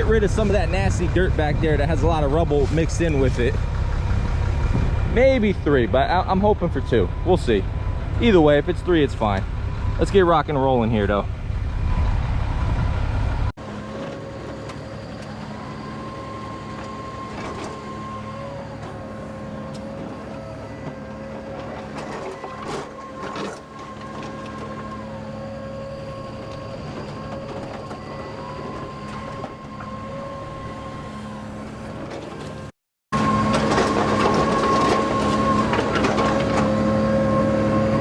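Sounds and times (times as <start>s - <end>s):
excavator hydraulic whine: 11.3s - 38.0s
rubble and bucket clanking: 18.8s - 25.0s, 33.2s - 37.9s.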